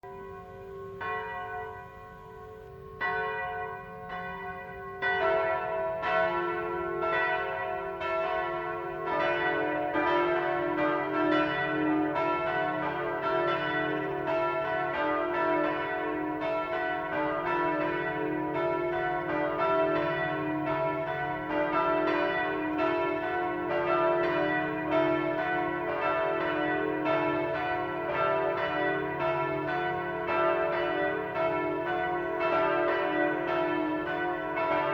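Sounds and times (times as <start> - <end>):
church bells ringing: 0.0 - 34.9.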